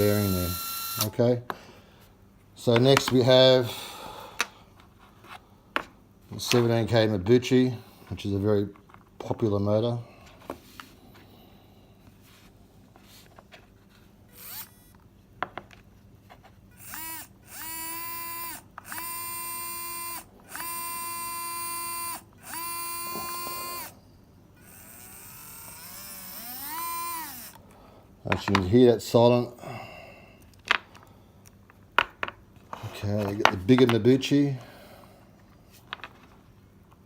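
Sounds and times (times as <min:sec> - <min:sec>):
electric motor whine: 0:00.0 - 0:01.2, 0:14.3 - 0:15.0, 0:16.8 - 0:24.0, 0:24.6 - 0:27.6
motor spinning up with hiss: 0:14.3 - 0:14.9, 0:16.7 - 0:24.0, 0:24.6 - 0:27.6.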